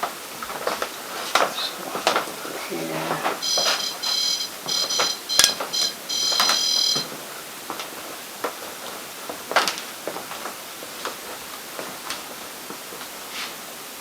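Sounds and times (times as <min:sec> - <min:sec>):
high-pitched electronic beeps: 0:03.4 - 0:07.1.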